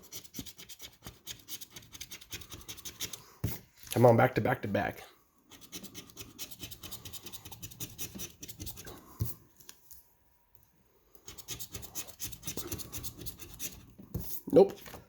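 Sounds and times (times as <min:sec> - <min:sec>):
lottery ticket being scratched: 0:00.0 - 0:03.2, 0:05.5 - 0:08.9, 0:11.2 - 0:13.9.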